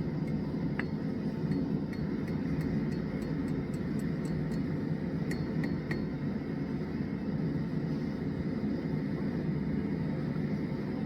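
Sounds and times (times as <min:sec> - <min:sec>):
light metallic clink: 0:00.3 - 0:06.1.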